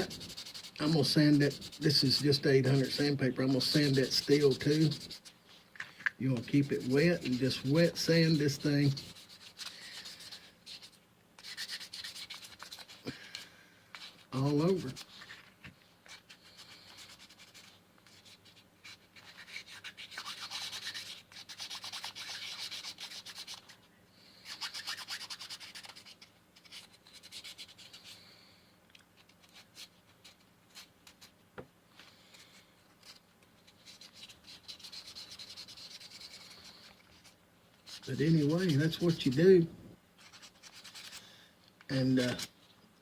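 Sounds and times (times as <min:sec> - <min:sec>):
sandpaper rubbing on a pipe: 0:00.0 - 0:05.3, 0:06.2 - 0:13.0, 0:14.0 - 0:15.5, 0:16.1 - 0:23.8, 0:24.4 - 0:28.2, 0:32.3 - 0:41.2.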